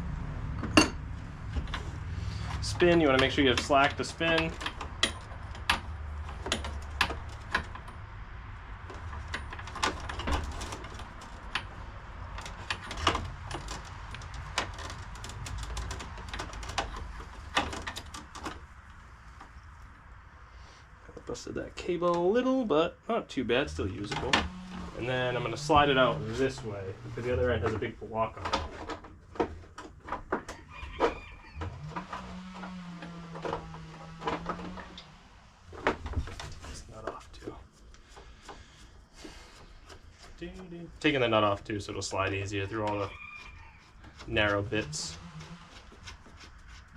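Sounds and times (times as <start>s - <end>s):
sharp clicks and metallic rattles: 0.5s - 20.0s, 23.6s - 38.9s.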